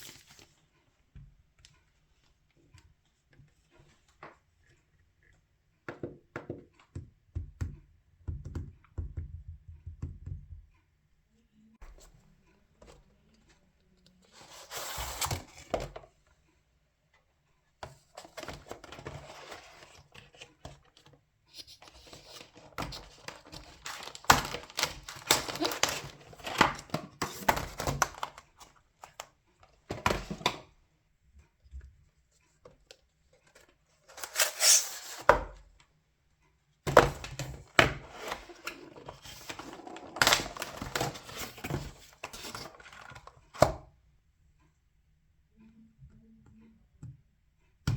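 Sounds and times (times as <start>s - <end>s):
packaging crinkling and tearing: 22.0s - 28.4s, 34.1s - 35.2s, 38.0s - 42.9s.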